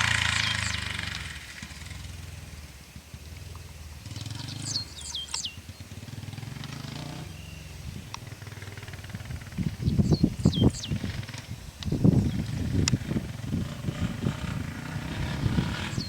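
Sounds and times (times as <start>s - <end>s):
distant atv engine running: 0.0s - 16.0s
bird chirps: 0.2s - 1.6s, 4.2s - 6.0s, 7.0s - 12.8s
low rumbling: 5.8s - 16.0s.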